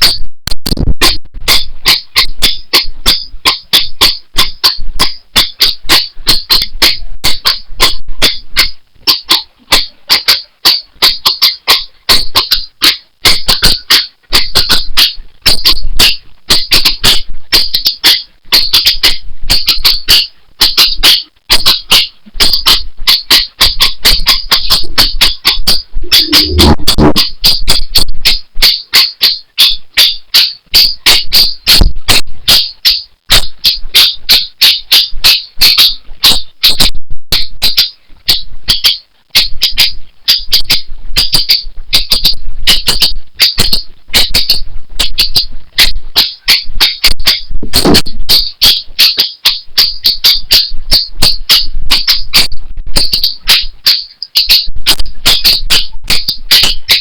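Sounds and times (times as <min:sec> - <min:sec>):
insect chirping: 0:19.6 - 0:27.7.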